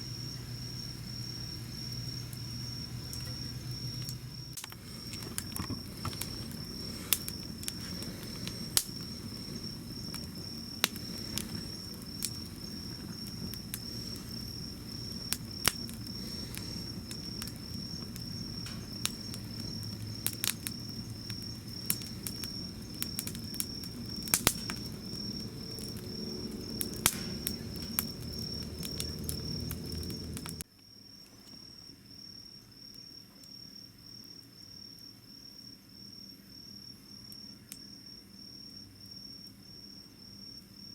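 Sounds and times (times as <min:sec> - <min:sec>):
insects chirping: 0:00.0 - 0:40.9
campfire crackling and popping: 0:00.2 - 0:30.6.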